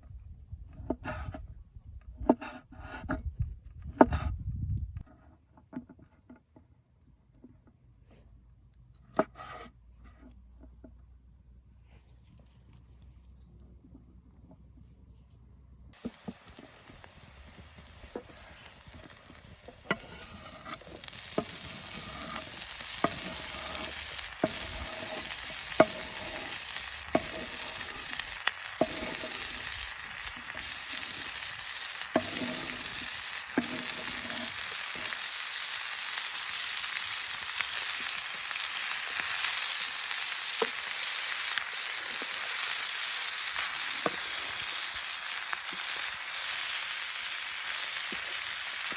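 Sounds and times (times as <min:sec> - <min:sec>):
spatula scraping a pan: 0:00.7 - 0:01.4, 0:09.2 - 0:09.7, 0:16.0 - 0:45.1
food frying in hot oil: 0:16.0 - 0:48.9.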